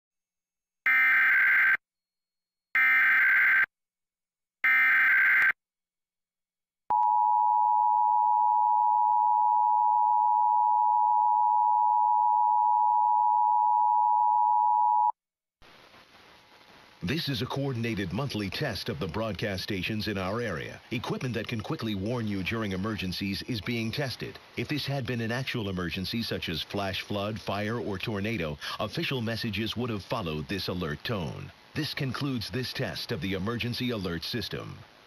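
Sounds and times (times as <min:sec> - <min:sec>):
two-tone alarm: 0:00.9 - 0:01.8, 0:02.8 - 0:03.7, 0:04.6 - 0:05.6, 0:06.9 - 0:15.1.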